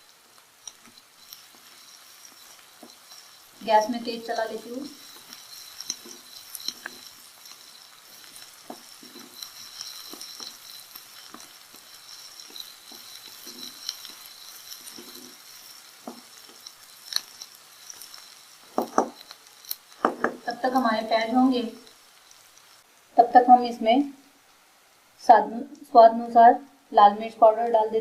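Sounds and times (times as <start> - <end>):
onion and garlic sizzling in oil: 0.0 - 28.0
spoon knocking a pan: 18.7 - 20.6.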